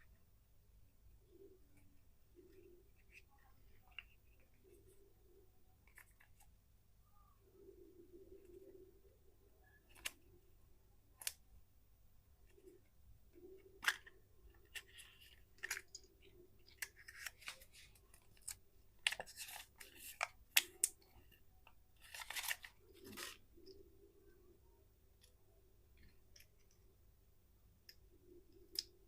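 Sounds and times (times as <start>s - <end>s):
candy wrapper crinkling: 22.0s - 23.4s.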